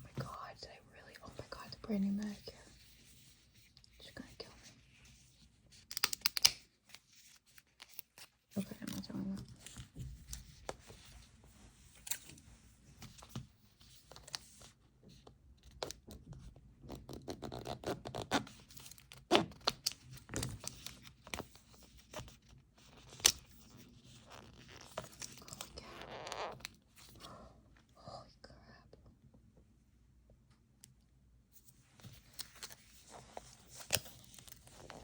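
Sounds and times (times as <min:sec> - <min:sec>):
sharp plastic snaps: 0:05.9 - 0:06.7.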